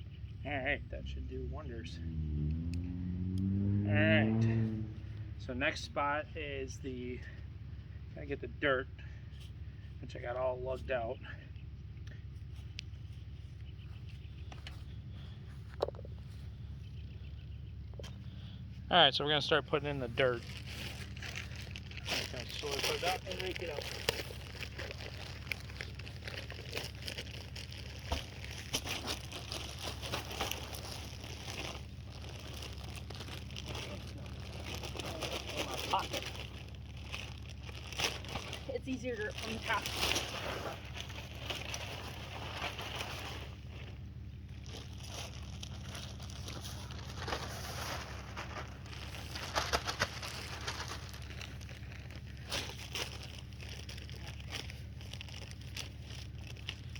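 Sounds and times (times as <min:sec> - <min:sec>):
raking soil scraping: 0:03.4 - 0:56.9
low rumble: 0:11.2 - 0:56.8
soil bag crinkling: 0:19.3 - 0:56.9.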